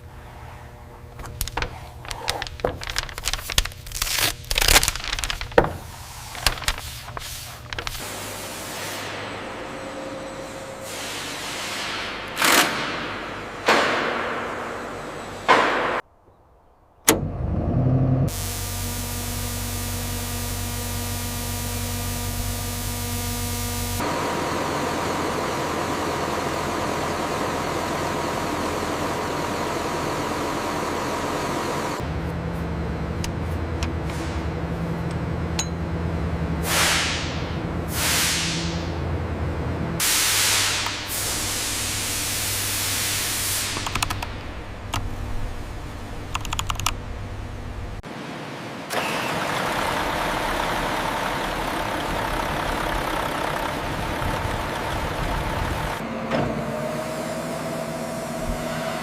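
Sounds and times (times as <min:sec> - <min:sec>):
factory machinery humming: 0:00.0 - 0:16.0, 0:17.0 - 0:59.0.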